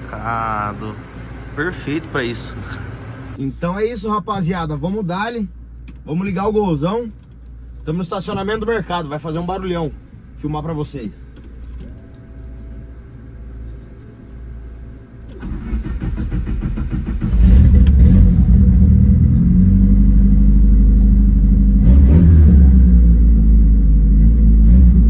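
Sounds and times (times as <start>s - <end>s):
car engine cranking and running: 15.3s - 25.0s
engine revving: 15.4s - 25.0s.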